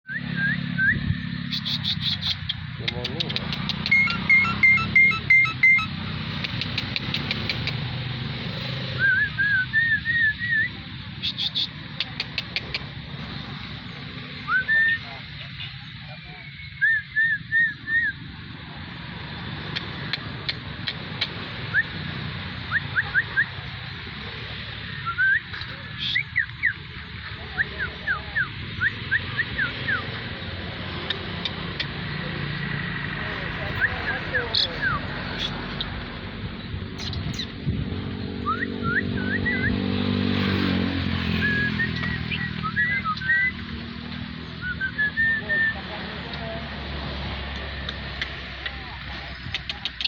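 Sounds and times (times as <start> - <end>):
bird whistled calls: 0.1 - 2.6, 3.7 - 6.0, 8.9 - 11.8, 14.4 - 15.1, 16.4 - 18.2, 24.9 - 26.8, 37.0 - 37.6, 38.4 - 39.8, 41.3 - 43.7, 44.4 - 45.8
quick series of clicks: 1.5 - 4.5, 6.4 - 7.9, 11.2 - 13.0, 19.6 - 21.4, 49.4 - 50.0
bird whistling wavering notes: 3.8 - 6.0, 41.3 - 43.6.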